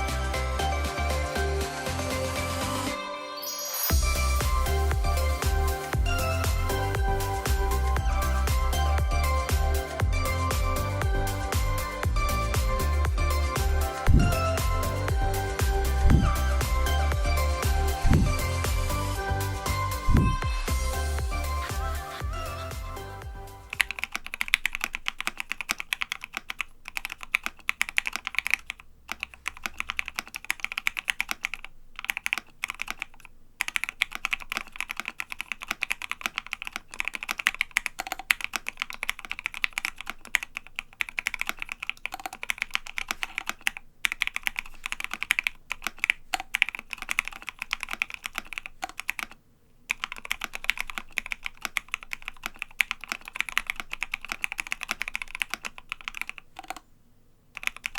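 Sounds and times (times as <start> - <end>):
fast typing on mechanical keyboard: 10.8 - 18.7, 23.7 - 56.8, 57.6 - 57.9.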